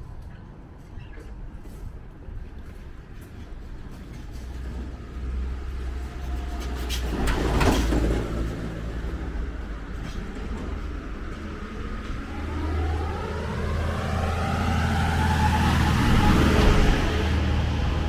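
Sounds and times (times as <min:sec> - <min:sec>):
low traffic hum: 0:00.0 - 0:18.0
vehicle driving past: 0:10.8 - 0:18.0.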